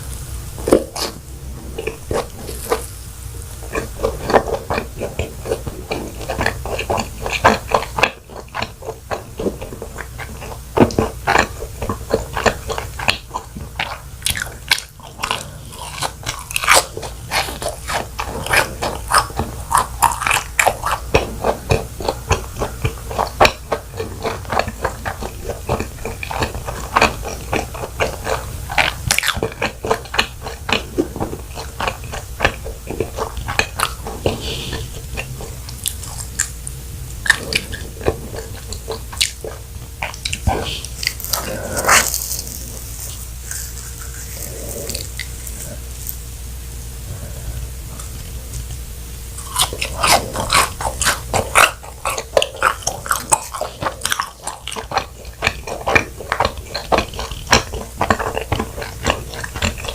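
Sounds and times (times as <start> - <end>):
crunchy bites and chewing: 0.6 - 46.3, 49.3 - 59.9.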